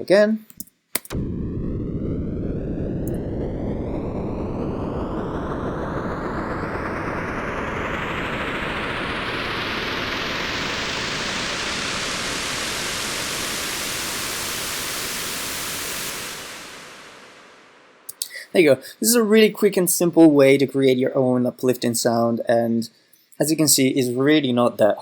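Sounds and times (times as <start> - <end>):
rising white noise whoosh: 1.0 - 18.2.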